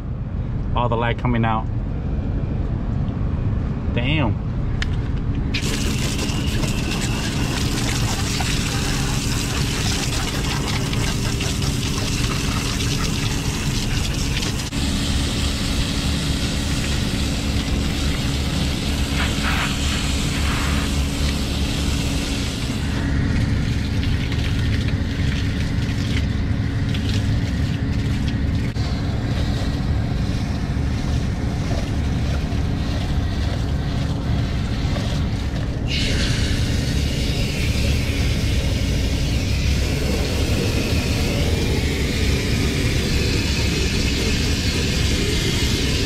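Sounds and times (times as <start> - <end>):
air conditioning unit humming: 0.0 - 46.0
hiss: 18.9 - 22.7, 35.9 - 46.0.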